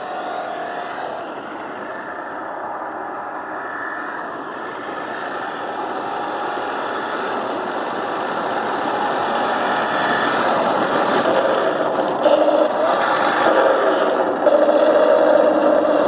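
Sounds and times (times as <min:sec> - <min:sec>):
remote-control car driving: 0:06.8 - 0:16.0.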